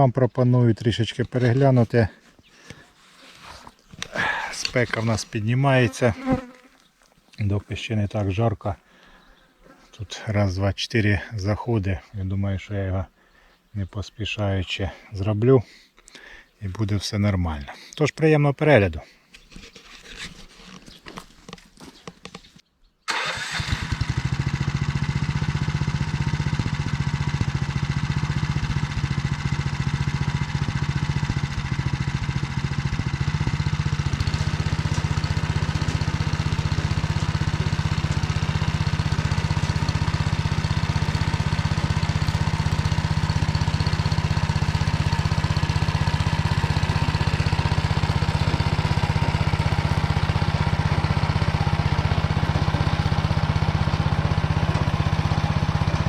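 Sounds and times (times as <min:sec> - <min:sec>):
walk-behind tractor engine running: 0:01.0 - 0:05.4, 0:23.1 - 0:56.0.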